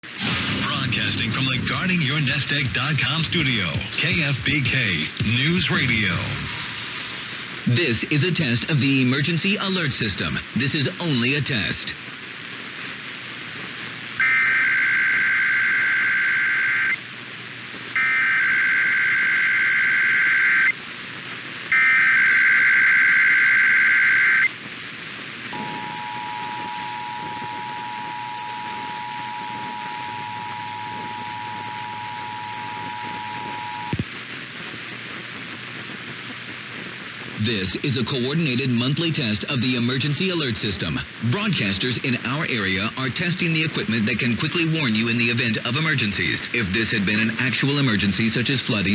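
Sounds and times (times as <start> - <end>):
radio hiss: 0.0 - 48.9
digital data bursts: 14.2 - 17.0, 18.0 - 20.8, 21.7 - 24.6
two-tone attention signal: 14.2 - 17.0, 18.0 - 20.7, 25.6 - 34.0.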